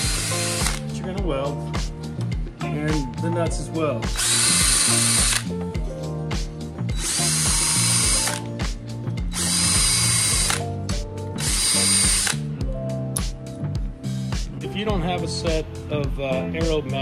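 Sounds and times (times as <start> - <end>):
background music with steady beat: 0.0 - 17.0.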